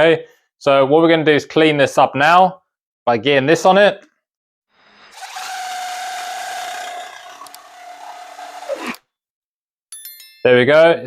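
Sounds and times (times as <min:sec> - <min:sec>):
bit scraping copper pipe: 0:05.1 - 0:09.0
impact driver motor whine: 0:05.1 - 0:09.0.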